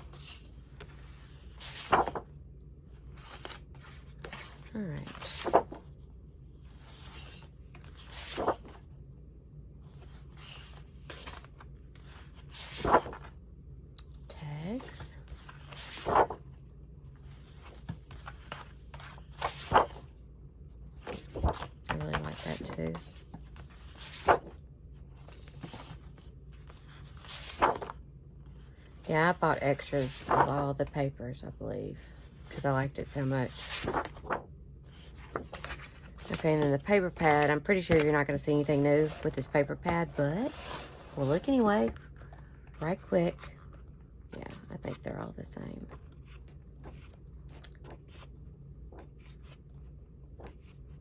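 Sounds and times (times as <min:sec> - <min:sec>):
paper and card rustling: 0:00.0 - 0:02.3, 0:03.0 - 0:05.9, 0:06.8 - 0:08.8, 0:09.9 - 0:13.3, 0:14.7 - 0:16.6, 0:17.2 - 0:20.1, 0:20.9 - 0:28.0, 0:28.6 - 0:30.9, 0:32.0 - 0:45.0, 0:45.8 - 0:51.0
crisp paper rustles: 0:25.2 - 0:28.0, 0:33.5 - 0:34.4.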